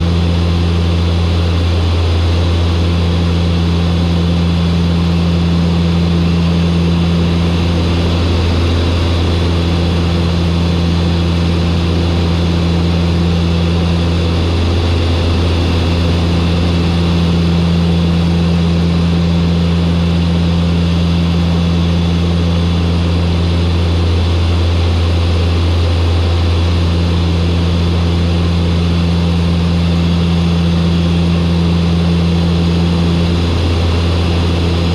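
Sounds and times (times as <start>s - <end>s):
turboprop propeller drone: 0.0s - 34.9s
higher hum: 5.8s - 18.9s, 31.7s - 34.9s.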